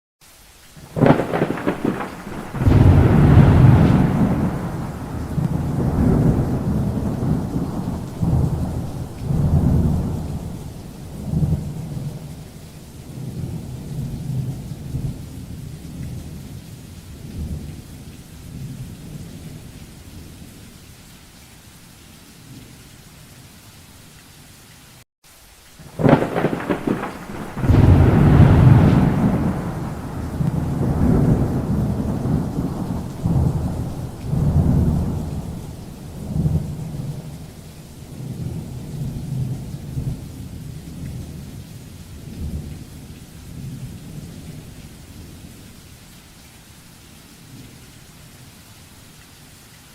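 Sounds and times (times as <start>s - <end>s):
steady rain: 0.2s - 49.9s
thunder rumbling: 0.9s - 12.6s, 25.9s - 41.4s
sharp thunderclap: 1.0s - 12.2s, 26.0s - 37.5s.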